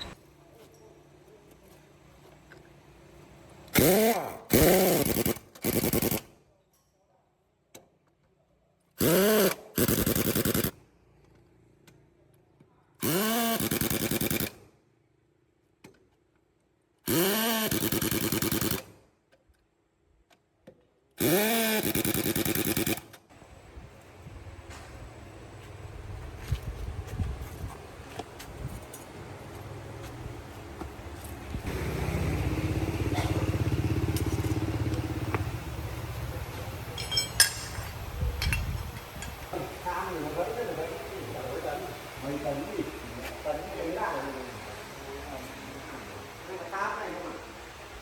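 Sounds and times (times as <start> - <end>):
impact wrench hammering: 36.9 - 38.7.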